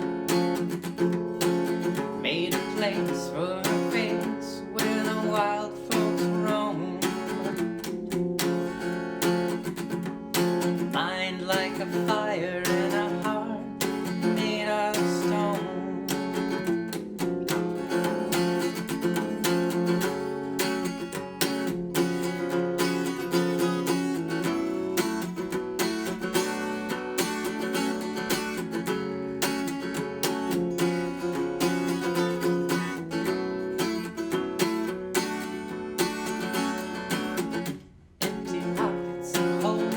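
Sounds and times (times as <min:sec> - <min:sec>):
acoustic guitar strumming: 0:00.0 - 0:39.9.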